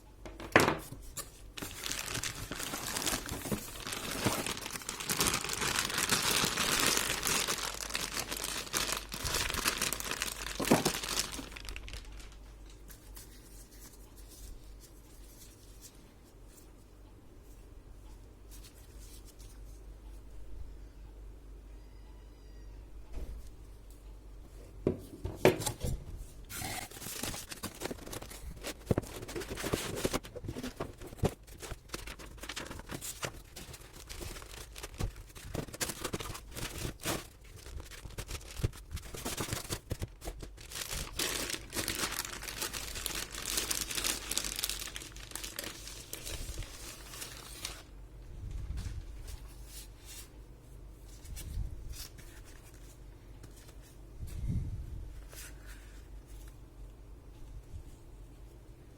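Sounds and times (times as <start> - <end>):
packaging rustling: 1.2 - 13.2, 26.5 - 47.9
packaging crinkling and tearing: 1.6 - 13.2, 26.5 - 47.9.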